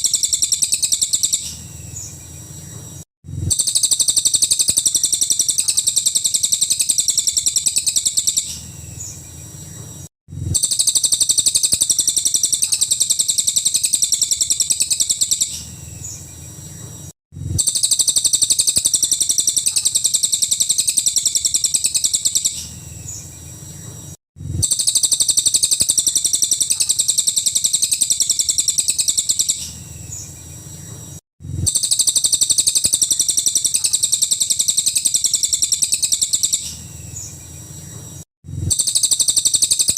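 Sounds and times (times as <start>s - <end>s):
bird rapid high-pitched chattering: 0.0s - 1.7s, 3.5s - 8.8s, 10.5s - 15.8s, 17.6s - 22.8s, 24.6s - 29.9s, 31.6s - 36.9s, 38.7s - 39.9s.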